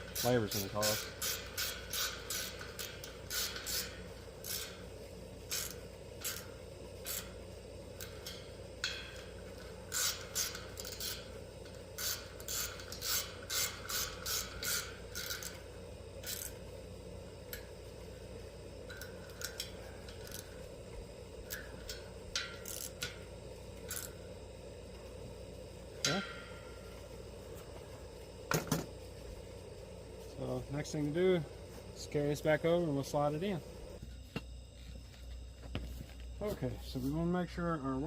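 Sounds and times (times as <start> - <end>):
ratchet wrench clicking: 0.0 - 7.4, 8.0 - 16.6, 18.9 - 20.5, 21.4 - 23.2, 23.8 - 24.2
metal rubbing and scraping: 0.0 - 11.4.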